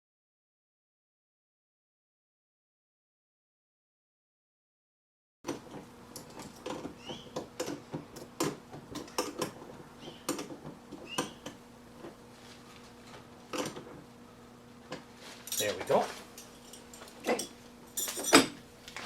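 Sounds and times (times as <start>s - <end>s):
wrenches clinking on metal: 5.5s - 8.4s, 15.4s - 18.6s
brief squeaks: 6.9s - 7.4s.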